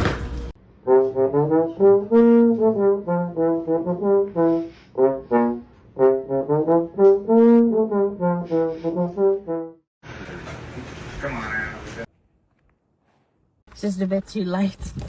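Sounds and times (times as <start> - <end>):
brass melody: 0.6 - 9.9.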